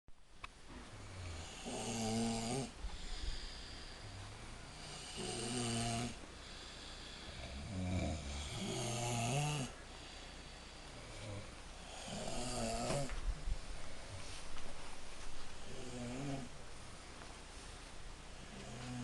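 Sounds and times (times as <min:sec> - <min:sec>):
person snoring: 0:01.0 - 0:09.8, 0:11.0 - 0:13.2, 0:15.6 - 0:16.5, 0:18.5 - 0:19.0.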